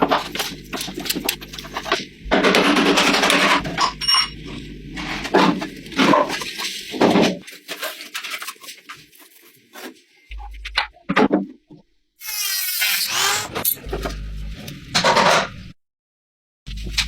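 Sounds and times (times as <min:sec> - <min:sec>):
power tool running: 0:00.0 - 0:07.0, 0:12.2 - 0:14.0.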